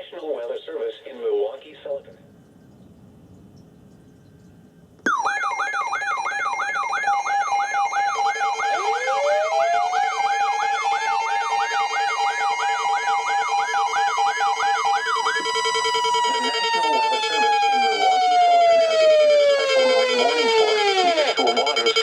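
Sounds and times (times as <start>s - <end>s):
steady siren tones: 4.7s - 22.0s
siren winding up slowly: 5.0s - 22.0s
siren sweeping up and down: 5.1s - 22.0s.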